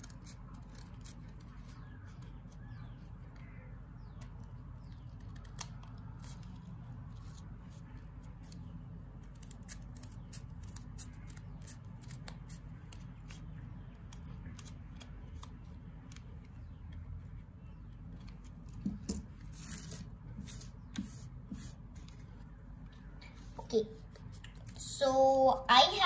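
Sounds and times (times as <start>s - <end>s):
scissors snipping paper: 0.0s - 3.5s, 4.1s - 17.1s.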